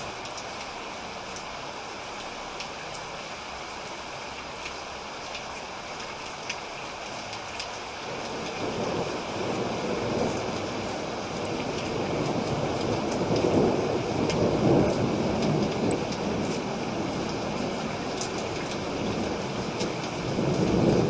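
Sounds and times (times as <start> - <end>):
steady rain falling: 0.0 - 21.0
low rumble of thunder: 8.0 - 21.0.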